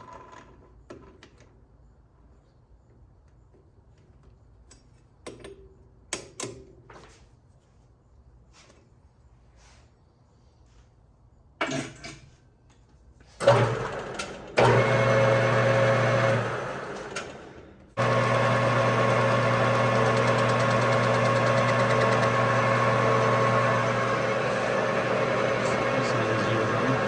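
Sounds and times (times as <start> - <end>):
lathe motor humming: 13.4 - 27.0.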